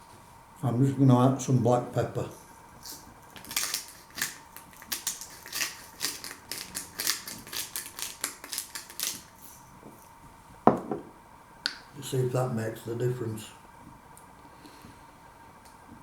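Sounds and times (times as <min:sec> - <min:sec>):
pepper mill grinding: 0:02.8 - 0:09.6.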